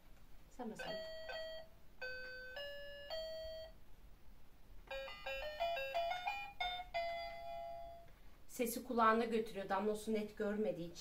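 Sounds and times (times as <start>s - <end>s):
electronic toy piano notes: 0.8s - 3.8s, 4.9s - 8.1s.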